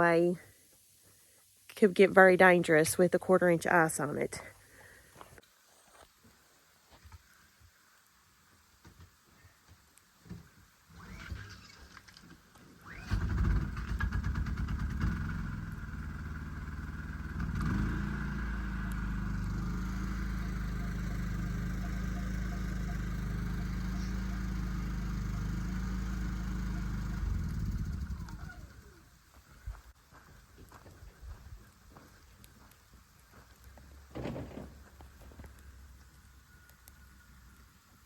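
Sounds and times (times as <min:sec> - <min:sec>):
small engine running: 0:10.9 - 0:12.0, 0:12.8 - 0:29.0.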